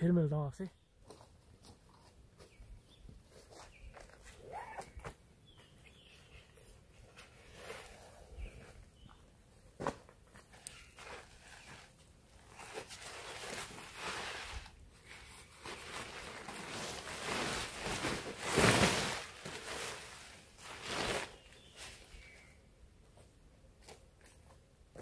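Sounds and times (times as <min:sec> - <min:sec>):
tent fabric rustling and scraping: 0:01.1 - 0:05.0, 0:05.6 - 0:08.8, 0:10.3 - 0:22.6.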